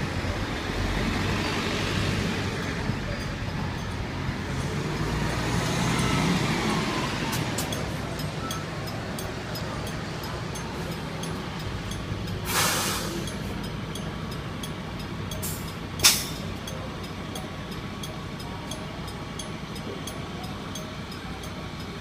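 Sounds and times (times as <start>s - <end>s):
buses running at low speed: 0.0s - 22.0s
faint turn warning chime: 2.6s - 5.2s, 7.6s - 12.4s, 13.0s - 22.0s
air brake hiss: 12.4s - 13.3s, 15.4s - 16.4s.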